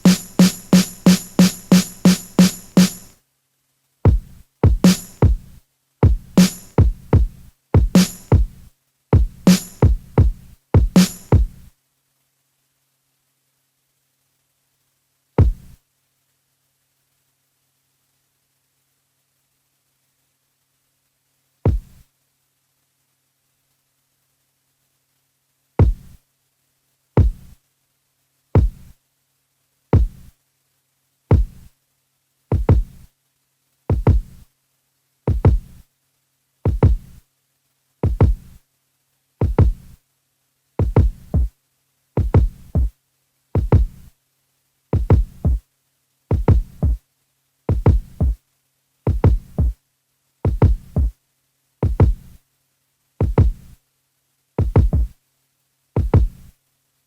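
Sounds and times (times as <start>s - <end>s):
electronic kick drum: 0.0s - 3.1s, 4.1s - 11.7s, 15.4s - 15.8s, 21.7s - 22.0s, 25.8s - 26.2s, 27.2s - 27.6s, 28.6s - 28.9s, 30.0s - 30.3s, 31.3s - 31.7s, 32.5s - 33.1s, 33.9s - 34.4s, 35.3s - 35.8s, 36.7s - 37.2s, 38.0s - 38.6s, 39.4s - 40.0s, 40.8s - 41.5s, 42.2s - 42.9s, 43.6s - 44.1s, 45.0s - 45.6s, 46.3s - 47.0s, 47.7s - 48.4s, 49.1s - 49.8s, 50.5s - 51.1s, 51.8s - 52.4s, 53.2s - 53.8s, 54.6s - 55.2s, 56.0s - 56.5s.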